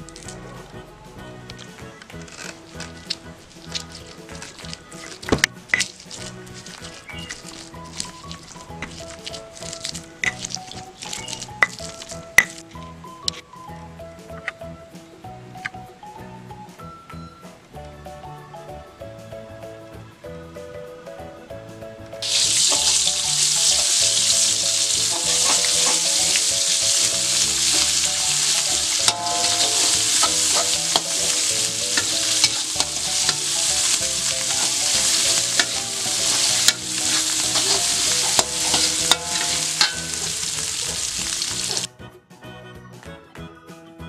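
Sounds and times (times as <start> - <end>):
background music: 0.0 - 44.0
utensil clicking in pan: 1.6 - 12.7, 22.2 - 41.9
food sizzling in hot oil: 2.2 - 12.7, 22.2 - 41.9.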